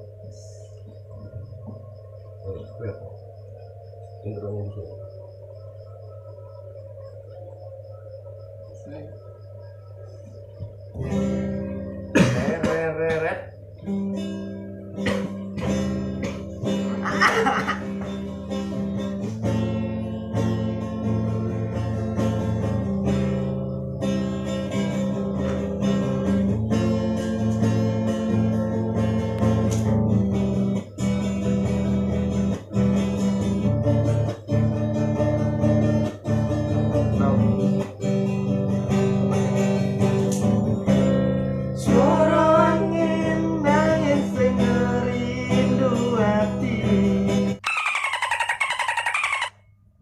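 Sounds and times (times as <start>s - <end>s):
acoustic guitar strumming: 10.9s - 47.6s
man singing: 41.8s - 47.4s.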